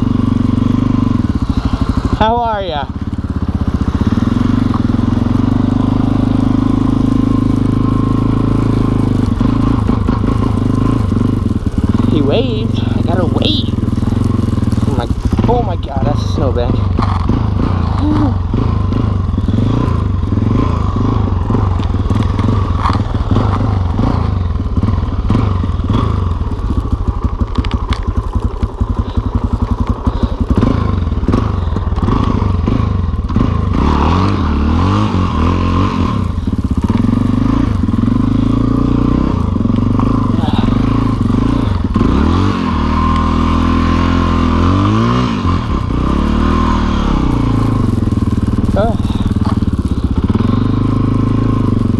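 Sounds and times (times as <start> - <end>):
dirt bike engine revving: 0.0 - 51.9.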